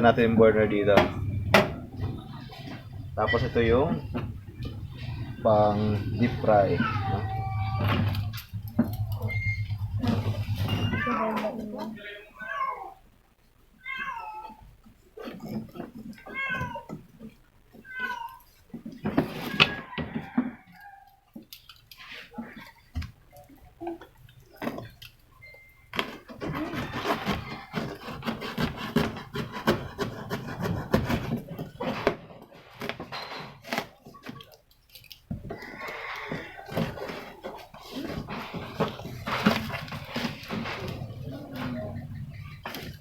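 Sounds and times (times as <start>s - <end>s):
rustling and knocks of handling: 0.0s - 12.0s, 14.5s - 43.0s
cat meowing: 6.0s - 9.1s, 10.4s - 13.1s, 13.8s - 14.7s, 16.1s - 17.0s, 17.8s - 18.6s.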